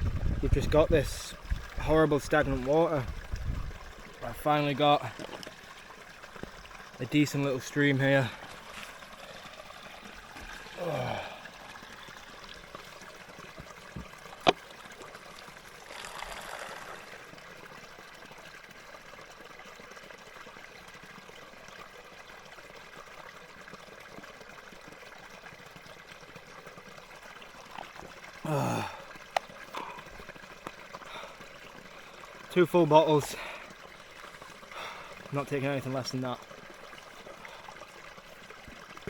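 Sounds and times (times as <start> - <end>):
stream trickling: 0.0 - 39.0
water bottle filling: 0.1 - 18.8, 23.6 - 39.0
short falling sigh: 10.8 - 11.5, 28.4 - 29.1.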